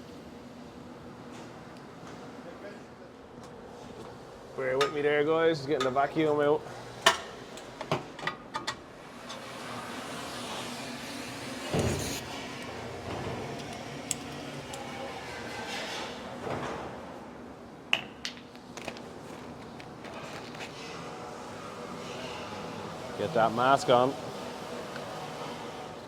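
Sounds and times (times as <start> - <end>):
shop vacuum hiss: 9.1 - 12.9.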